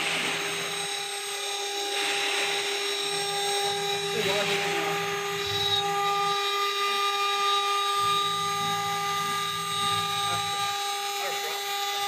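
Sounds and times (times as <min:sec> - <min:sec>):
machine low hum: 0:00.0 - 0:12.0
spindle high whine: 0:00.0 - 0:12.0.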